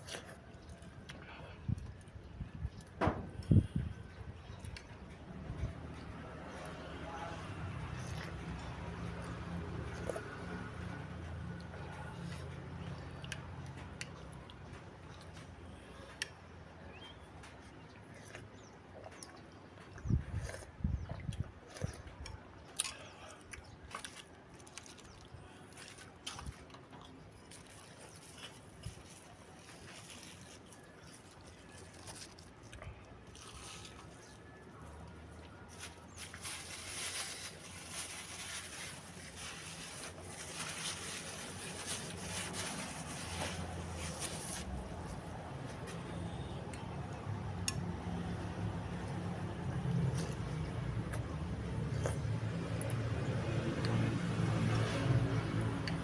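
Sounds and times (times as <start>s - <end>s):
chewing food: 4.4s - 56.0s
wet mouth eating sounds: 17.8s - 28.8s, 49.8s - 56.0s.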